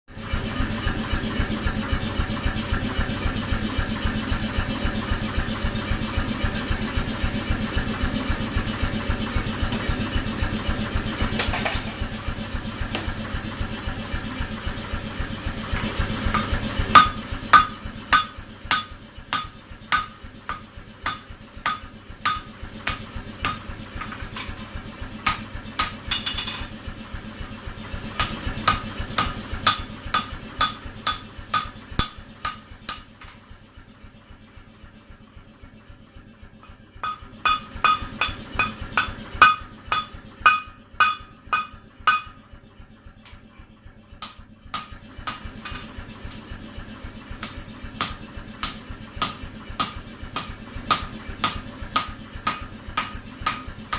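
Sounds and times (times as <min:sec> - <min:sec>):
machine running with rapid pulse: 0:00.1 - 0:53.9
hammer blows ringing on anvil: 0:15.8 - 0:24.7, 0:25.3 - 0:26.7, 0:28.2 - 0:33.4, 0:36.6 - 0:42.4, 0:44.2 - 0:45.8, 0:47.4 - 0:53.8.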